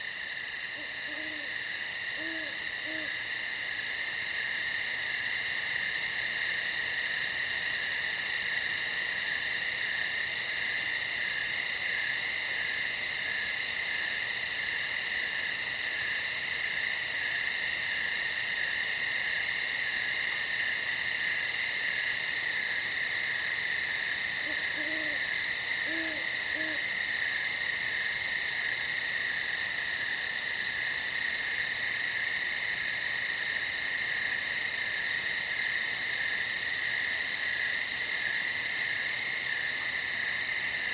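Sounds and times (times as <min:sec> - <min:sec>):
insects trilling: 0:00.0 - 0:40.9
low owl hoots: 0:00.8 - 0:03.2, 0:24.4 - 0:26.9.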